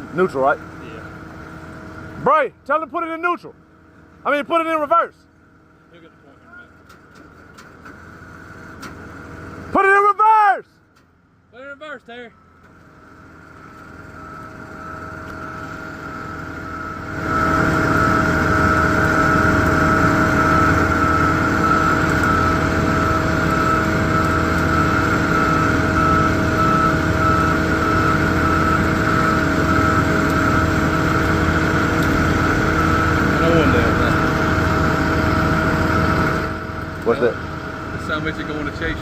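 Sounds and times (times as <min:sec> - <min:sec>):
constant whine: 0:00.0 - 0:39.0
vehicle engine at high revs: 0:12.6 - 0:39.0.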